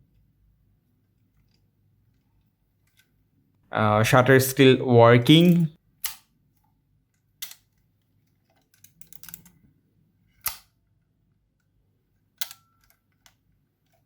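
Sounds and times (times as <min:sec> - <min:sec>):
small mechanical clicks: 0:08.5 - 0:09.6.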